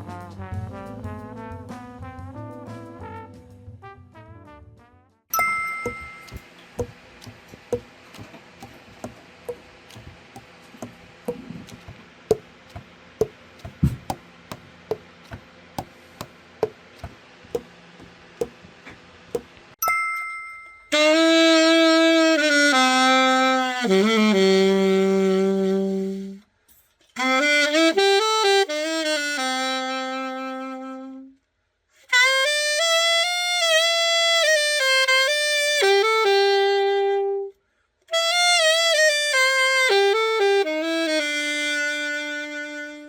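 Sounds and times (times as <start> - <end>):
alto saxophone melody: 5.8 - 9.2, 20.9 - 26.4, 27.2 - 31.4, 32.1 - 43.0.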